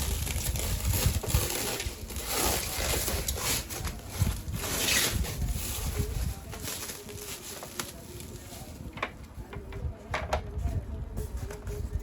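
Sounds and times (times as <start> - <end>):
packaging rustling and scraping: 0.0 - 9.0.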